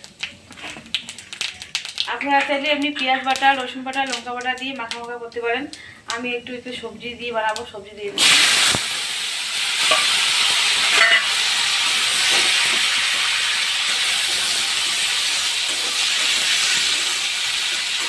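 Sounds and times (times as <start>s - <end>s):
vegetables sizzling in hot oil: 6.1s - 18.0s.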